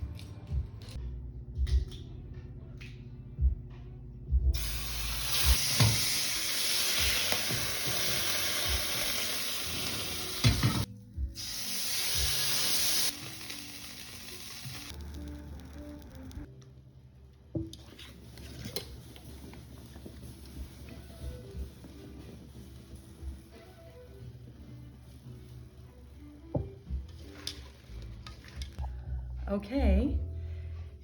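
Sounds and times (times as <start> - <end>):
food sizzling: 4.6 - 16.5, 17.9 - 28.7.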